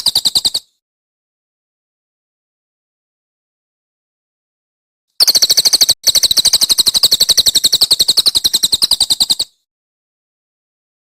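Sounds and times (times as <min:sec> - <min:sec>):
songbird trilling: 0:00.0 - 0:00.7, 0:05.2 - 0:09.6.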